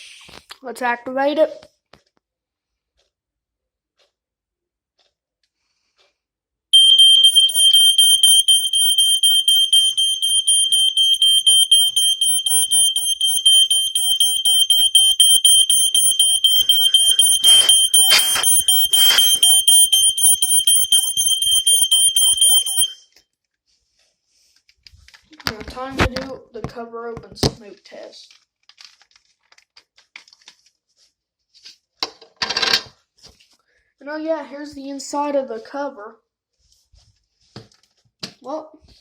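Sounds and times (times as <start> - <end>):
smoke alarm high-pitched tone: 6.8 - 23.0.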